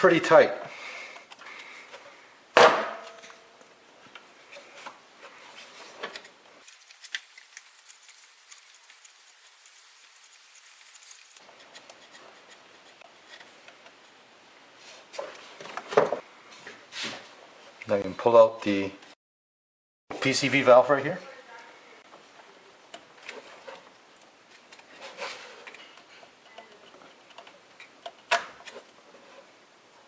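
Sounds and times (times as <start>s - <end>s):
faint clicks and rubbing: 6.6s - 12.7s.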